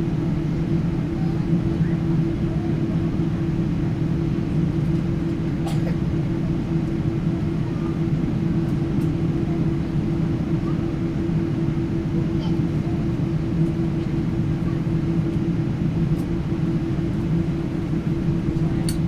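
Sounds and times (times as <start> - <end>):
airliner cabin engine drone: 0.0 - 19.0.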